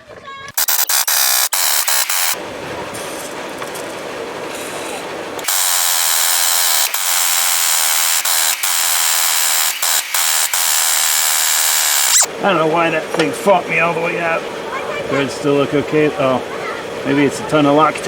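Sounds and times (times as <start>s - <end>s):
air tool loosening a bolt: 0.5s - 2.4s, 4.5s - 12.3s.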